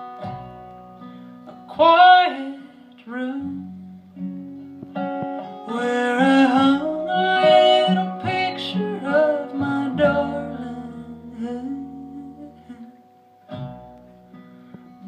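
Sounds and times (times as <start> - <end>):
plucked acoustic guitar: 0.0 - 15.0
person singing: 1.5 - 3.8, 5.6 - 13.1
low bass line: 3.5 - 15.0.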